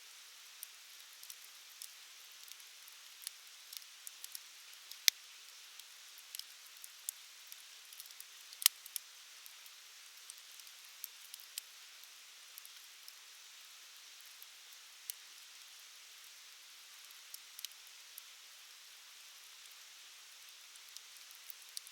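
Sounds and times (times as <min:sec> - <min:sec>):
wood fire crackling: 0:06.3 - 0:06.5, 0:07.9 - 0:09.0.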